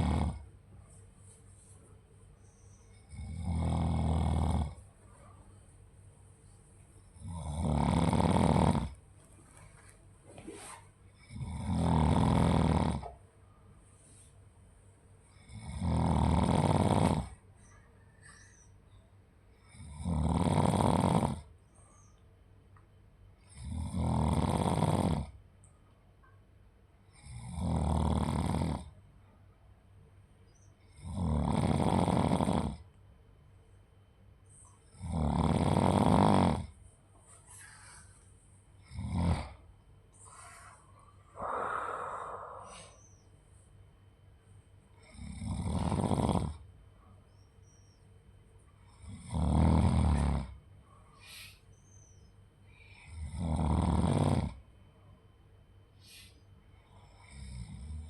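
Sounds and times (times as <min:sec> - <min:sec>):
person snoring: 0:00.0 - 0:00.4, 0:03.0 - 0:04.8, 0:07.2 - 0:09.0, 0:11.2 - 0:13.1, 0:15.3 - 0:17.4, 0:19.7 - 0:21.5, 0:23.4 - 0:25.3, 0:27.2 - 0:28.9, 0:30.9 - 0:32.8, 0:35.0 - 0:36.7, 0:38.8 - 0:39.6, 0:40.2 - 0:43.2, 0:45.0 - 0:46.6, 0:48.9 - 0:50.6, 0:52.8 - 0:54.6, 0:56.1 - 0:58.0.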